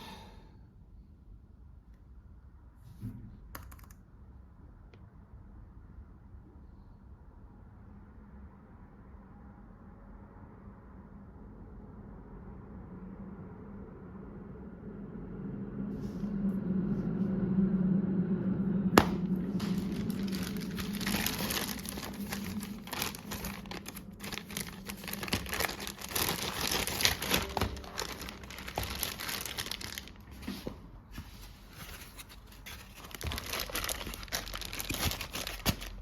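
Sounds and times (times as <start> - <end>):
low steady hum: 4.1 - 36.0
packaging crinkling and rustling: 19.0 - 36.0.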